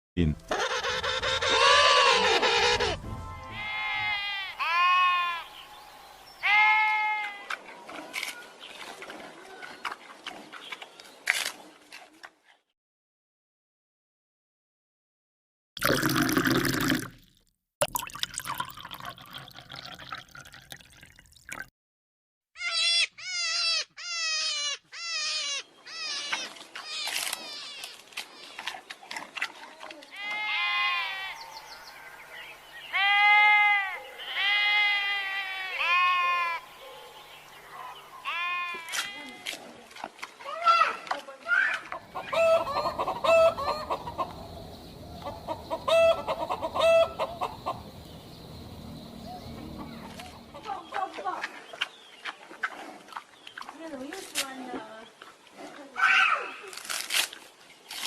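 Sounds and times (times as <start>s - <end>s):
young goat bleating: 3.6s - 5.4s, 6.4s - 7.5s, 30.1s - 31.4s, 32.9s - 36.6s, 38.2s - 39.4s
chickens clucking: 41.9s - 51.0s.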